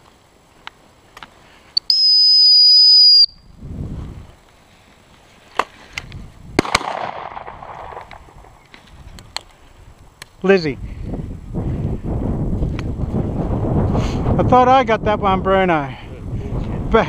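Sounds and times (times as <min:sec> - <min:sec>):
high-pitched whistle blast: 0:01.8 - 0:03.5
sharp cracks: 0:05.5 - 0:09.6.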